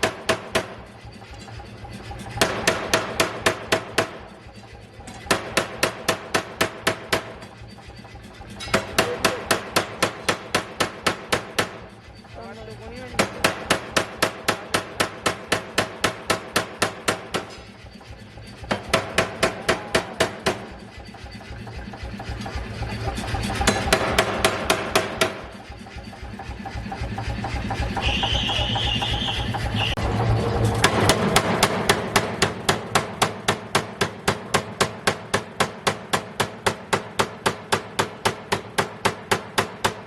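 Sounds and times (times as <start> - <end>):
air hammer striking: 0.0 - 1.1, 2.2 - 7.6, 8.4 - 12.1, 13.1 - 30.0, 30.8 - 40.0
steady machine hum: 0.0 - 40.0.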